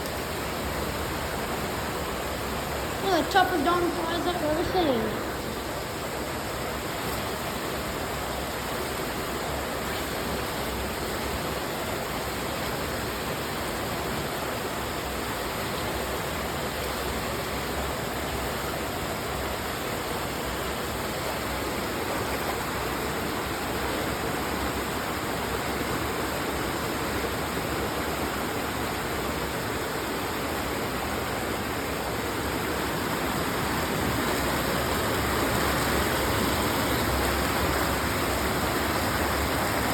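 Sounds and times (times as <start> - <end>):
creek water rushing: 0.0 - 39.9.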